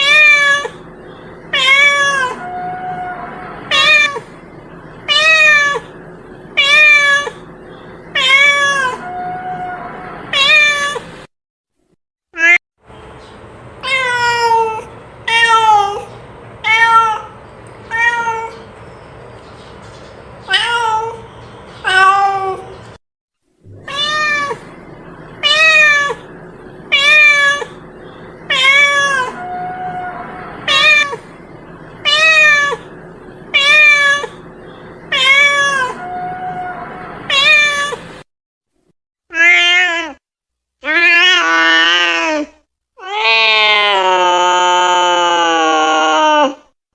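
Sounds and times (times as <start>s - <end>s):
cat meowing: 0.0s - 0.8s, 1.5s - 4.3s, 5.1s - 6.0s, 6.6s - 7.4s, 8.2s - 11.0s, 13.8s - 18.6s, 20.5s - 21.2s, 21.8s - 22.7s, 23.7s - 24.7s, 25.4s - 26.3s, 26.9s - 27.8s, 28.5s - 31.3s, 32.0s - 32.9s, 33.5s - 34.4s, 35.1s - 38.0s, 39.3s - 40.2s, 40.8s - 46.6s.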